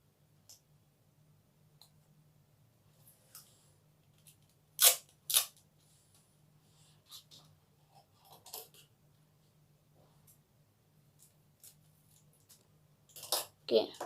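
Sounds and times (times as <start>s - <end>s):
adhesive tape ripping off roll: 4.8s - 5.6s.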